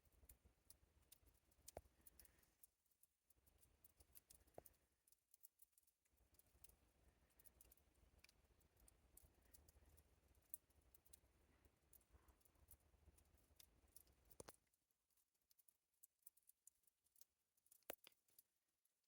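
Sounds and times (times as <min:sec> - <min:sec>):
water dripping from rock: 0:06.2 - 0:14.7.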